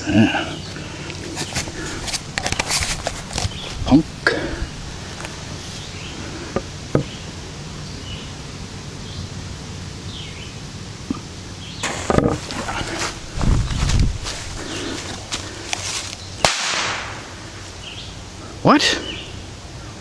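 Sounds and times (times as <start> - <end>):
firecracker small crack: 16.4 - 17.3.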